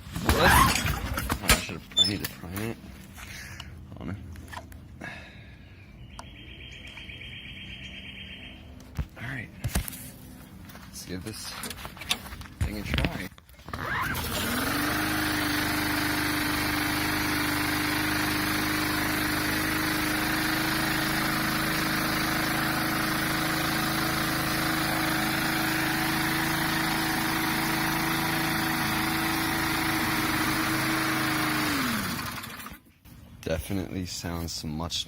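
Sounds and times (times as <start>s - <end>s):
lawnmower engine running: 9.8s - 33.0s.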